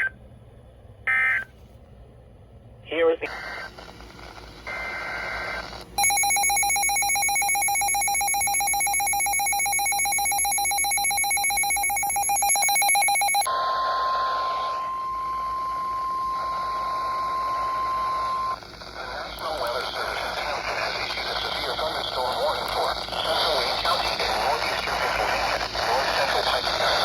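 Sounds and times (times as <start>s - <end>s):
rapidly pulsing high beep: 6.0s - 13.5s
steady alarm tone: 6.0s - 18.6s.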